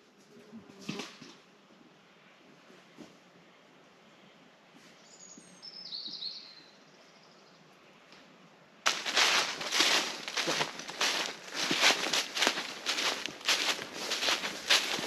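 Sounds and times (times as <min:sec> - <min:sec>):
songbird singing: 0:05.0 - 0:07.8
footsteps on trail: 0:08.9 - 0:15.0.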